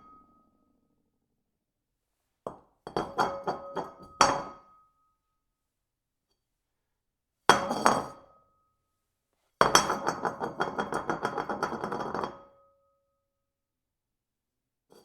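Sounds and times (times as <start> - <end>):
porcelain jar clinking on hard surface: 2.9 - 4.6.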